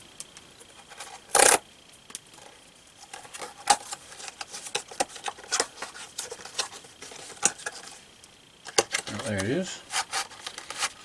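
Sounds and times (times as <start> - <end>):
packaging clicks taps and rustles: 3.1 - 7.9, 8.6 - 11.0.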